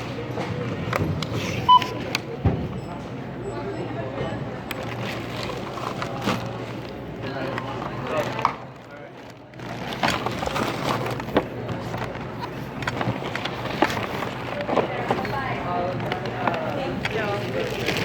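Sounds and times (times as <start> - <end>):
items clicking and knocking: 4.7 - 18.0.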